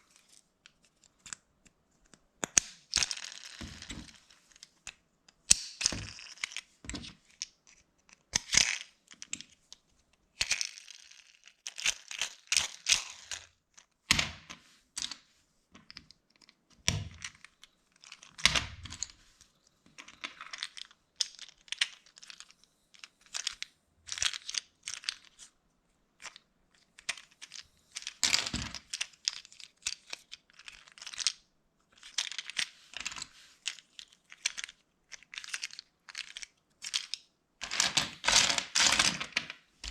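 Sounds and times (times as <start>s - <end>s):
plastic toy bricks clicking together: 32.0s - 39.9s.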